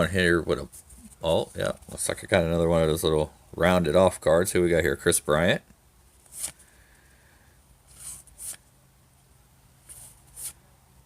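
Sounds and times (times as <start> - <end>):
cards sliding papery swishes: 6.2 - 6.8, 7.9 - 8.7, 9.8 - 10.6.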